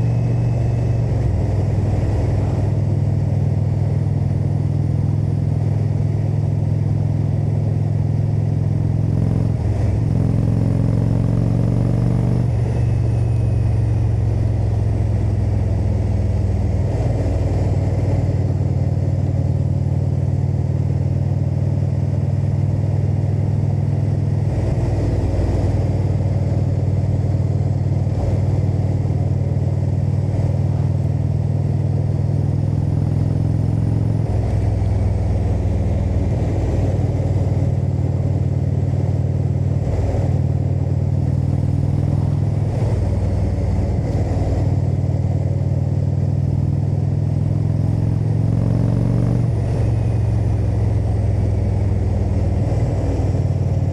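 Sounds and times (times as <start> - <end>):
motorcycle engine and exhaust: 0.0 - 53.9.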